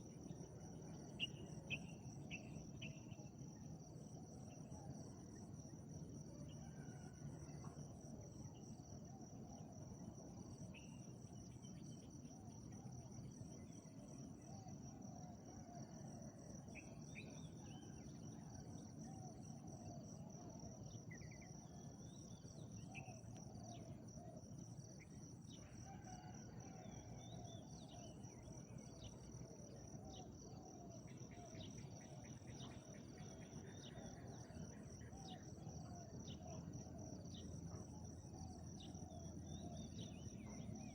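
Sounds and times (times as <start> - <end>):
crickets droning: 0.0 - 40.9.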